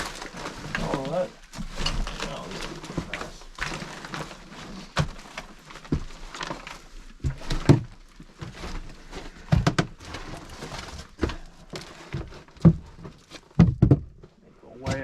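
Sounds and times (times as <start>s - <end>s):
debris knocking and clunking: 0.0s - 15.0s.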